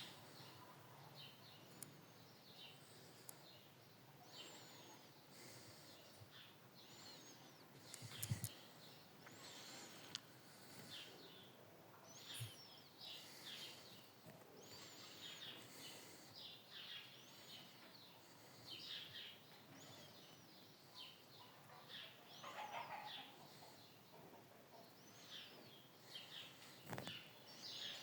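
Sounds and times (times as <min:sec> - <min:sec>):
faint bird chirps: 0:00.0 - 0:28.0.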